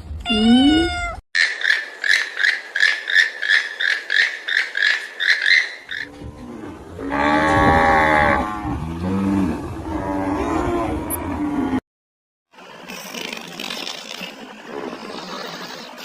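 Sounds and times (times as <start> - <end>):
rapid high mewing calls: 1.4 - 6.1
cow mooing: 6.0 - 11.8.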